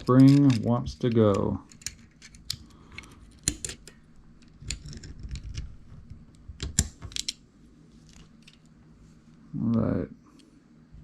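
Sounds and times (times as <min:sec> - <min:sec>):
small metal clicks and scraping: 0:00.0 - 0:05.7.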